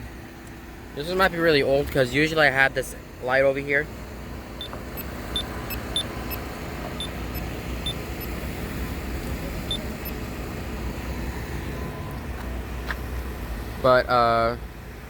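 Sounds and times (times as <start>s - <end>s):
road traffic rumble: 0.0s - 15.0s
short high-pitched beeps: 4.6s - 8.4s, 9.7s - 10.2s.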